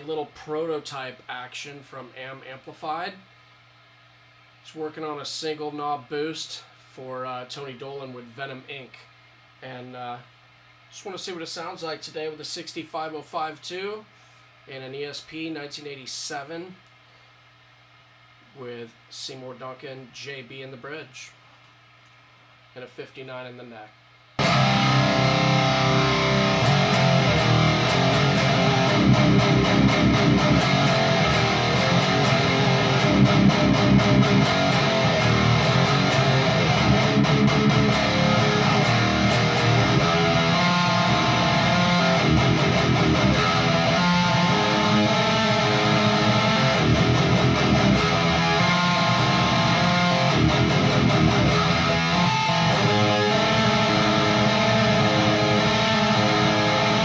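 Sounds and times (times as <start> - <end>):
distorted electric guitar riffs: 24.4 - 57.0.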